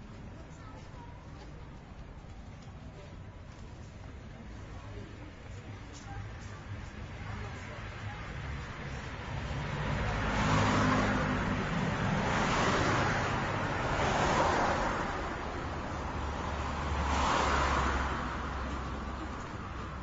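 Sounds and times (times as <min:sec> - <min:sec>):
cars passing: 0:04.0 - 0:20.0.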